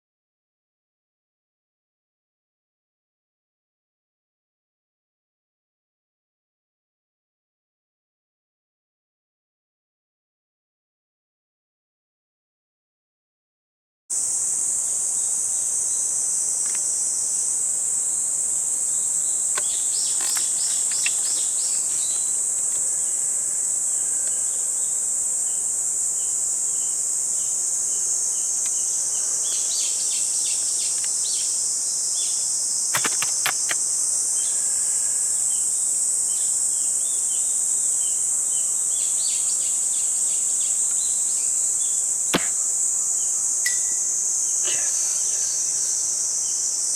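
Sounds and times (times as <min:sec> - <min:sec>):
crickets chorus: 0:14.1 - 0:46.9
sharp clicks: 0:33.0 - 0:33.8.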